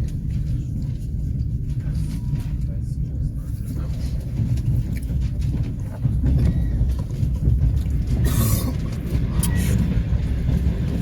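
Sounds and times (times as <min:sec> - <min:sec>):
train carriage rumbling on track: 0:00.0 - 0:11.0
train wheels clicking: 0:04.1 - 0:11.0.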